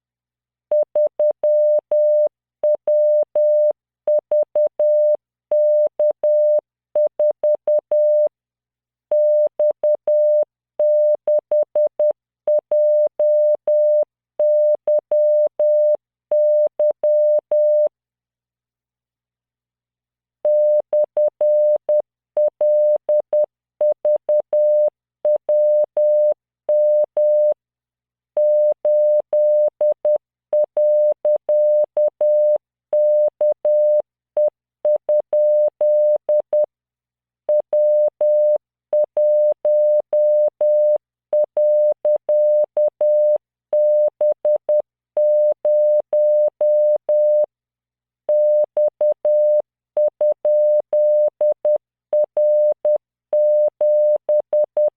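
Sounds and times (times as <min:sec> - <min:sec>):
morse code tone: 0:37.5 - 0:47.5, 0:48.3 - 0:54.9.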